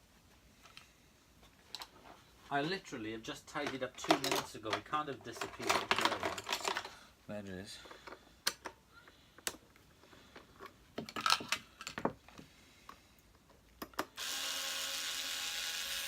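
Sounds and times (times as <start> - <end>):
parts clicking and tapping: 7.8 - 14.2
electric screwdriver running: 14.2 - 16.0.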